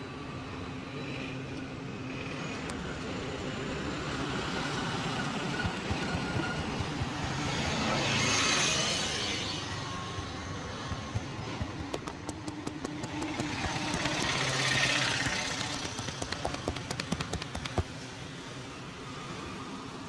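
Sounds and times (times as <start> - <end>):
street traffic noise: 0.0 - 20.0
quick sharp taps: 10.9 - 18.0.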